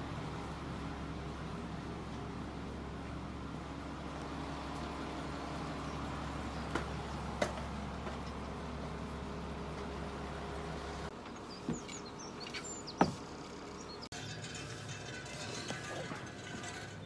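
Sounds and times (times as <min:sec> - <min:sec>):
low mechanical hum: 0:00.0 - 0:17.0
small birds chirping: 0:11.1 - 0:14.1.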